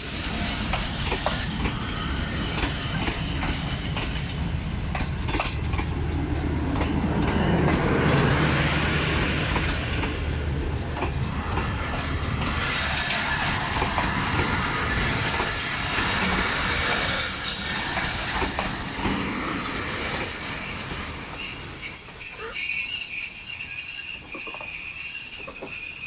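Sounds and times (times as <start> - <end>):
train carriages rumbling on track: 0.0 - 26.0
high-pitched whine: 11.2 - 26.0.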